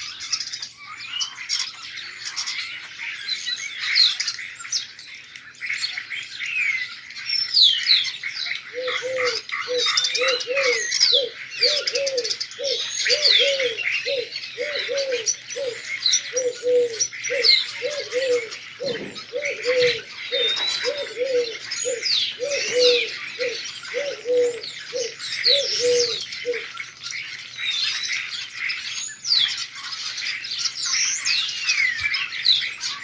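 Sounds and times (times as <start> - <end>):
small birds chirping: 0.0 - 33.0
pigeon cooing: 8.7 - 26.7.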